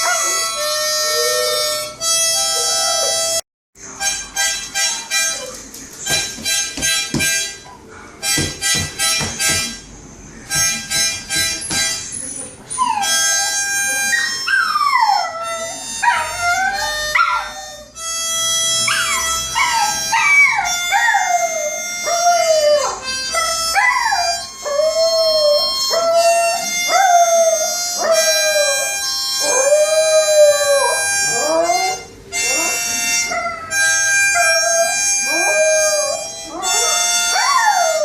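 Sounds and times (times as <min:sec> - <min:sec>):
harmonica held chords: 0:00.0 - 0:05.5, 0:06.1 - 0:38.0
dog howling: 0:18.9 - 0:38.0.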